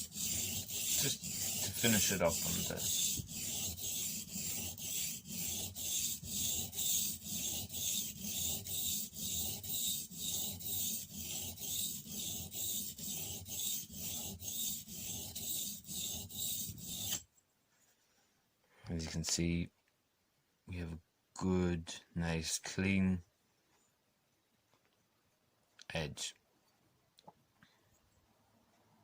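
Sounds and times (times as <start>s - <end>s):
blade rubbing on sharpening stone: 0.0s - 17.2s.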